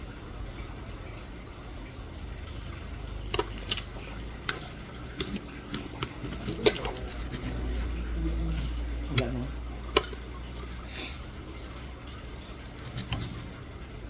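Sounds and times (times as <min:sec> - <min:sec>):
low steady hum: 0:00.0 - 0:14.0
metal instruments clinking: 0:08.6 - 0:10.8.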